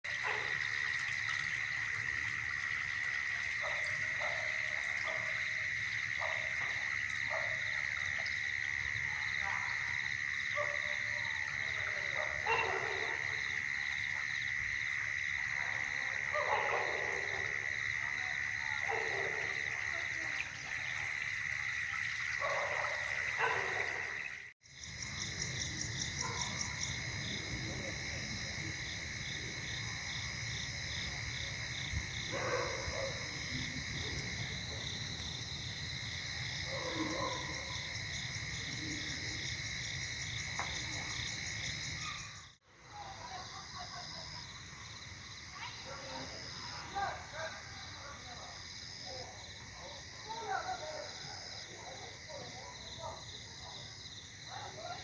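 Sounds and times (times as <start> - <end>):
crickets chirping: 0.0 - 55.0
flowing water: 0.1 - 5.4, 18.6 - 24.6
insect trill: 0.1 - 55.0.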